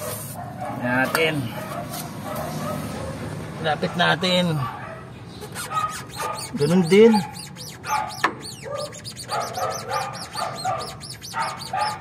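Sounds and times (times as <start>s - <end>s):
dogs barking: 0.0s - 12.0s
rubber bushing squeaking: 5.3s - 12.0s.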